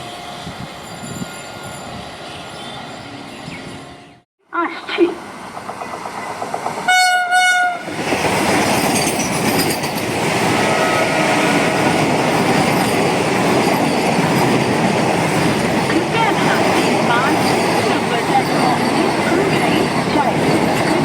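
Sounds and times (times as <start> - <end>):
train rushing past: 0.0 - 21.0
train horn: 6.9 - 7.9, 10.4 - 11.9
train wheels clattering: 7.9 - 21.0.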